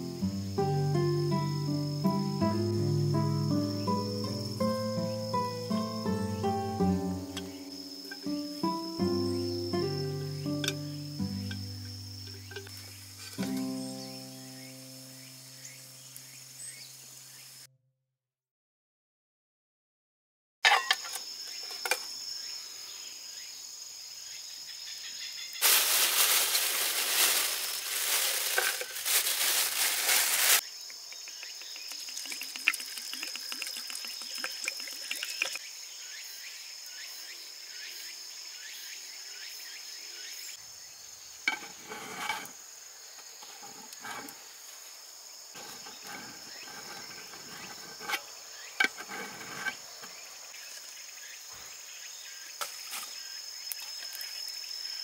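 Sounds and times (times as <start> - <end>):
insects trilling: 0.0 - 17.7, 21.0 - 55.0
faint rustling: 25.6 - 30.6
loud rushing hissing noise: 25.6 - 30.6.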